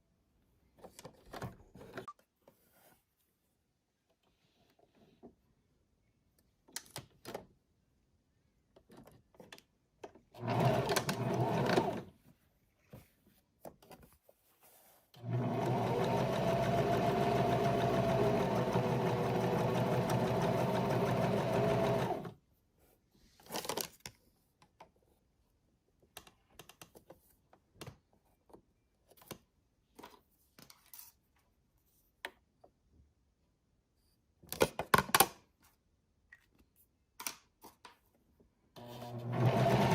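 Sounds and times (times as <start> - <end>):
sewing machine stitching: 10.4 - 12.1, 15.2 - 22.4, 38.8 - 39.9.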